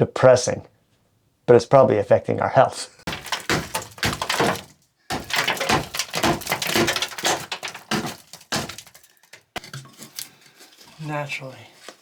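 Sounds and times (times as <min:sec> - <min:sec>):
demolition knocks and clatter: 0:03.1 - 0:10.2
things being pried loose: 0:03.1 - 0:10.4.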